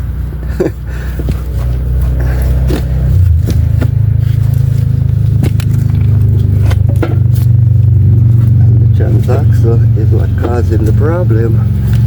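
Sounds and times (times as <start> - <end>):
low motor hum: 0.0 - 12.0
metallic clanks and scrapes: 1.2 - 9.6.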